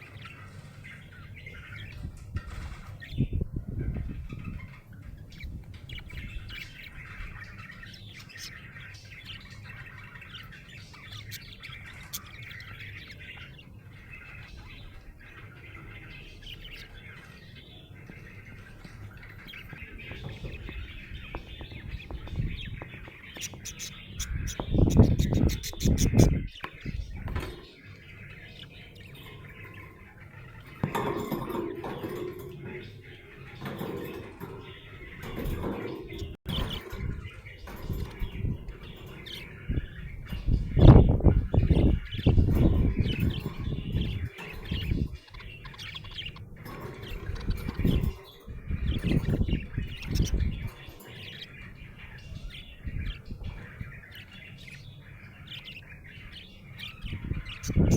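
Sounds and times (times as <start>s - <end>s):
low rustling bursts: 0.0s - 7.4s
budgerigars chirping: 0.0s - 57.9s.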